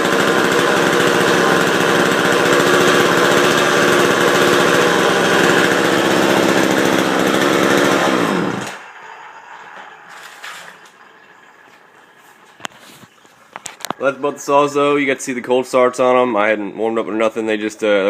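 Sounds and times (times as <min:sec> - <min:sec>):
chainsaw engine running: 0:00.0 - 0:09.0.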